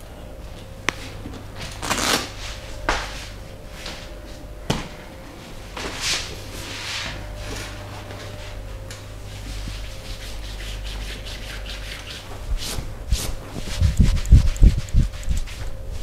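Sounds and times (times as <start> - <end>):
hands rubbing during massage: 9.3 - 16.0.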